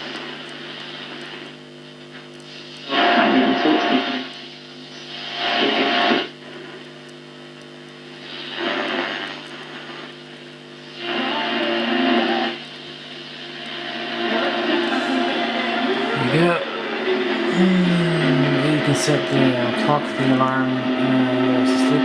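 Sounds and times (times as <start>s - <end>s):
radio sound from speaker: 0.0s - 6.9s, 10.9s - 12.8s, 13.6s - 22.0s
low hum: 13.6s - 22.0s.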